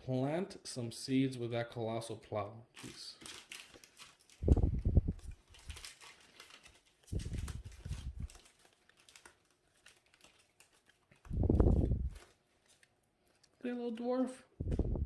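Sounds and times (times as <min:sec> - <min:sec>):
cards and plastic sleeves rustling: 0:02.7 - 0:15.0
low muffled bump: 0:14.6 - 0:15.0.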